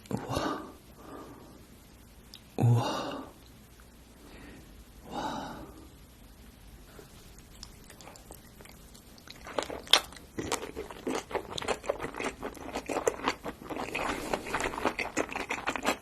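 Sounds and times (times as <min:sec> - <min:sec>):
person chewing crunchy food: 0:07.3 - 0:16.0.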